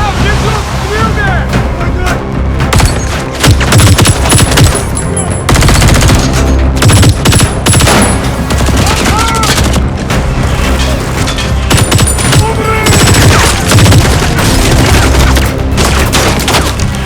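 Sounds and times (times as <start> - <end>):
film score music: 0.0 - 17.0
automatic gunfire: 3.4 - 4.8, 5.5 - 9.7, 11.7 - 16.6.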